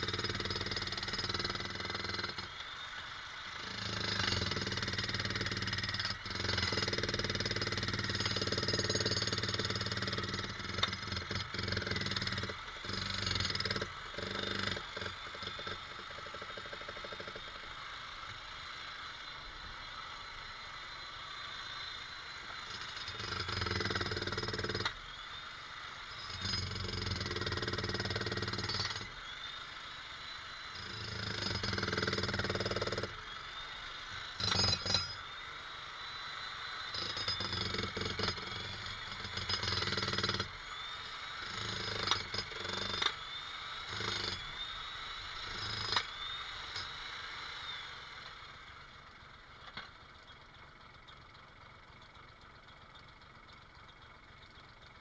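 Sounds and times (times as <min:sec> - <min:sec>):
jackhammer hammering: 0:00.0 - 0:02.8, 0:03.6 - 0:18.4, 0:22.3 - 0:25.2, 0:26.1 - 0:29.5, 0:30.7 - 0:35.8, 0:36.8 - 0:47.6
quiet steady mechanical sound: 0:00.0 - 0:55.0.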